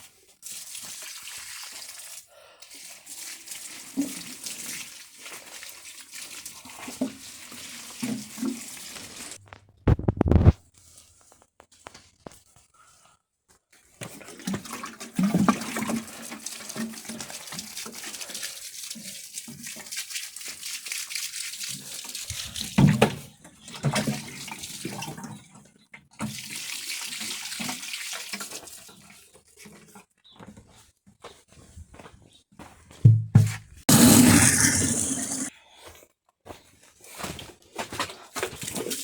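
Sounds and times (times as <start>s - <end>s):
water pouring: 14.1s - 22.9s, 33.9s - 35.5s
knocks: 33.1s - 33.7s.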